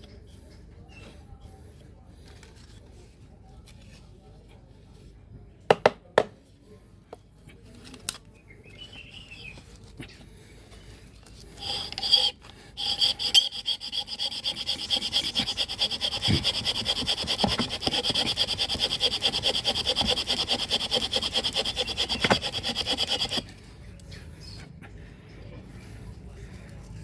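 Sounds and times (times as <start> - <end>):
bamboo sawing friction rasp: 11.4 - 23.6.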